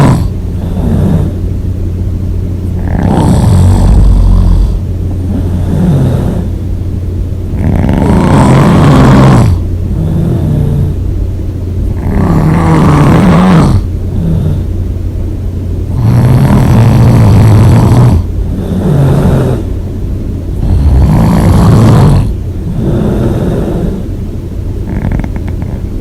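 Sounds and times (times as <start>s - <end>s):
person snoring: 0.0s - 1.4s, 2.8s - 6.6s, 7.5s - 11.0s, 11.9s - 14.7s, 15.9s - 19.7s, 20.6s - 24.1s, 24.9s - 25.9s
quiet breathing: 22.2s - 24.2s.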